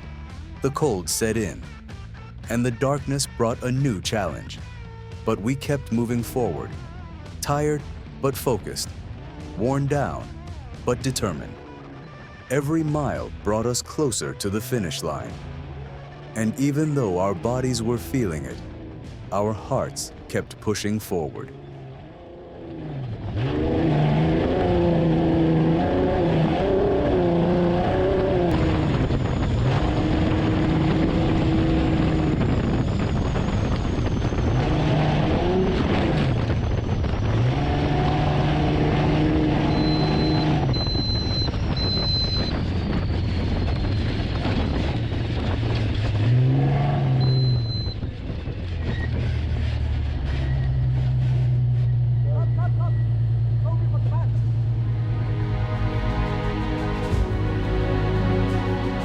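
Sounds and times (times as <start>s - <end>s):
truck engine revving: 0.0s - 20.8s, 21.4s - 59.0s
short high beeps: 39.7s - 42.6s, 47.2s - 48.0s.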